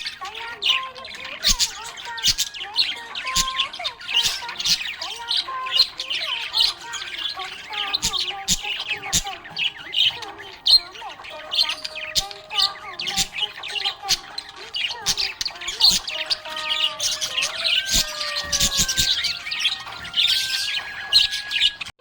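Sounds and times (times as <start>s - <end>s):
budgerigar chattering: 0.0s - 21.9s
bird squawks: 0.0s - 22.0s.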